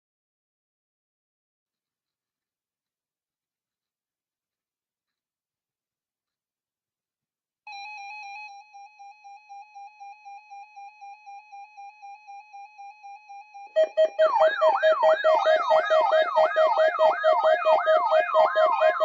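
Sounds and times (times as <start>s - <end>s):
siren-like alarm sweeps: 7.7s - 19.0s
fast-pulsing quiet beep: 13.8s - 19.0s.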